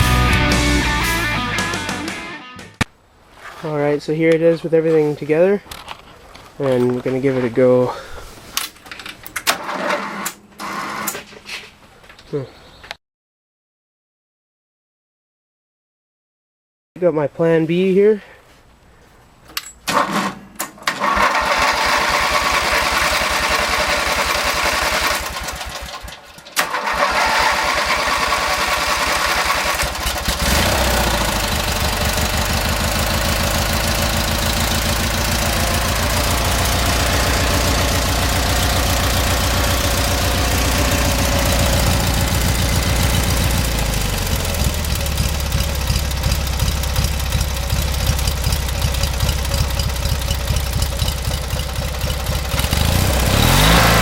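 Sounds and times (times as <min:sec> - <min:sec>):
electric starter cranking engine: 0:09.4 - 0:11.3, 0:19.9 - 0:54.0
lawn tractor engine running: 0:09.5 - 0:11.3, 0:19.9 - 0:54.0.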